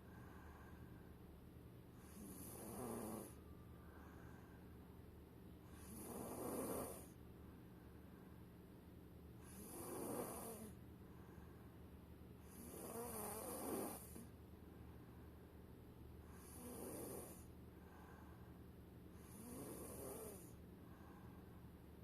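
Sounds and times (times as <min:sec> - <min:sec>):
steady low hum: 0:00.0 - 0:22.0
boy snoring: 0:02.0 - 0:03.4, 0:05.7 - 0:07.2, 0:09.4 - 0:10.8, 0:12.5 - 0:14.2, 0:16.3 - 0:17.5, 0:19.2 - 0:20.6.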